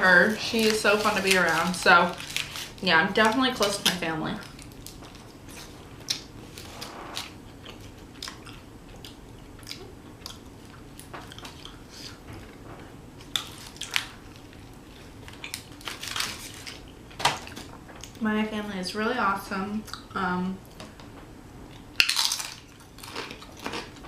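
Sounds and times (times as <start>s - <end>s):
person chewing crunchy food: 4.4s - 12.6s, 13.2s - 18.2s, 21.7s - 24.0s.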